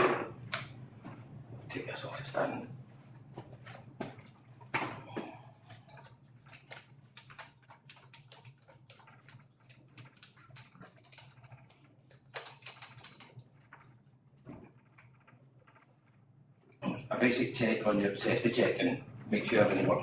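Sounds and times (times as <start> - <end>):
bicycle clicks and knocks: 4.0 - 15.9.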